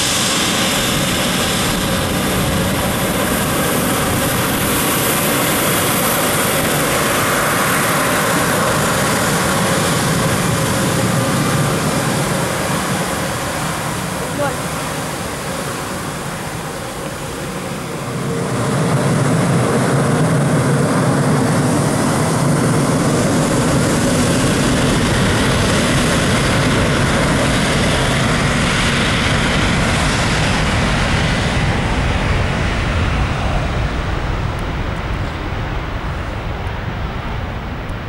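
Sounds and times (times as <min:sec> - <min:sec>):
jet airliner taking off: 0:00.0 - 0:38.0.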